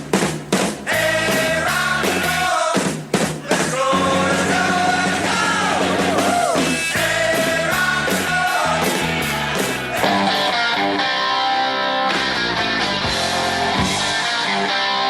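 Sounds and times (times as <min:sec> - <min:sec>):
rock music playing: 0:00.0 - 0:15.0
person singing: 0:03.4 - 0:10.6
electric guitar bending notes: 0:03.5 - 0:15.0.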